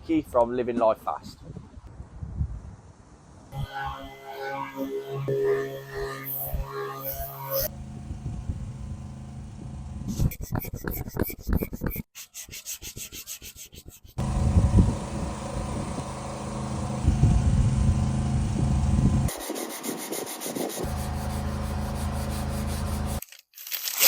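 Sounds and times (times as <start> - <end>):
machine hum: 3.5 - 10.2, 14.2 - 23.2
rapid rubbing strokes: 10.1 - 14.2, 19.3 - 23.2
sanding car bodywork: 16.9 - 23.2.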